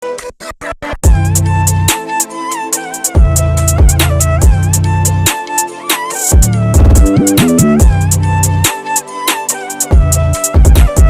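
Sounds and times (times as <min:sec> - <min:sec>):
violin-like melody: 0:01.4 - 0:11.0
heavy electronic beat with bass: 0:06.0 - 0:08.6, 0:09.9 - 0:11.0.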